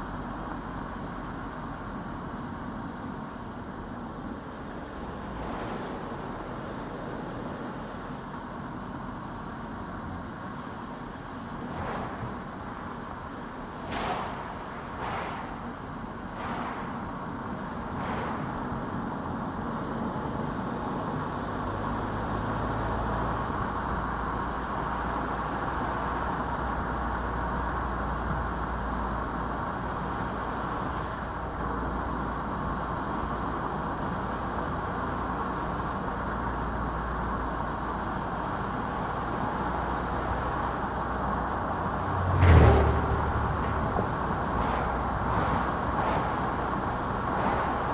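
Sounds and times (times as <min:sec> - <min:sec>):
sharp thump: 0:13.9 - 0:15.6
tyre and engine rumble: 0:37.6 - 0:47.9.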